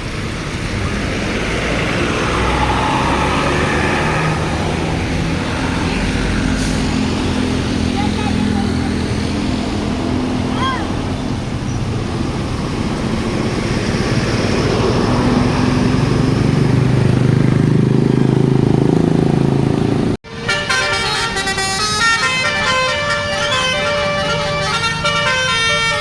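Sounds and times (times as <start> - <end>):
bus engine rumbling: 0.0 - 26.0
multi-tone musical air horn: 20.3 - 26.0.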